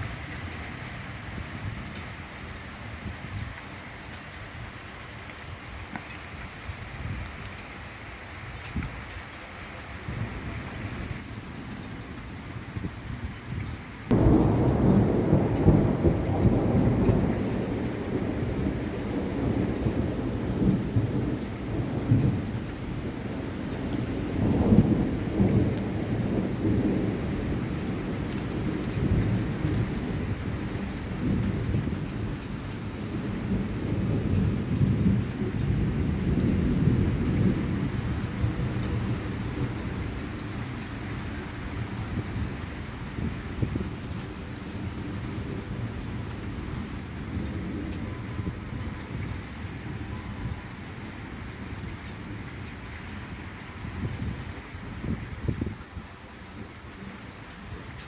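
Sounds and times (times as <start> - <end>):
steady rainfall: 0.0 - 58.0
thunder rumbling: 14.1 - 50.6.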